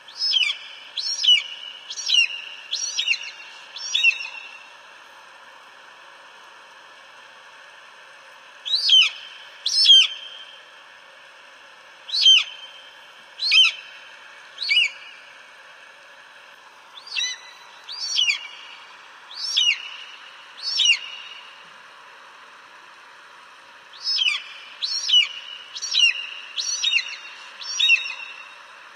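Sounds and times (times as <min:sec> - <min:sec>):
eagle calling: 0:00.1 - 0:04.6, 0:08.6 - 0:10.4, 0:12.1 - 0:12.8, 0:13.4 - 0:14.0, 0:14.6 - 0:15.2, 0:17.0 - 0:21.5, 0:24.0 - 0:28.6.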